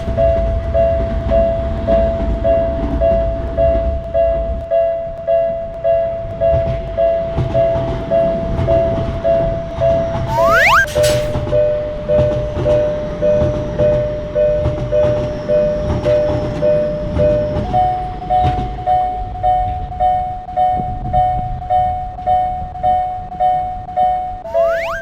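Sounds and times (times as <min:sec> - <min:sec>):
low train rumble: 0:00.0 - 0:10.3, 0:11.3 - 0:24.1
passing train rumbling: 0:00.0 - 0:10.3
level-crossing warning bell ringing: 0:00.0 - 0:25.0
level crossing alarm: 0:10.2 - 0:11.4, 0:21.8 - 0:25.0
rising whistle-like glide: 0:10.3 - 0:11.3, 0:24.5 - 0:25.0.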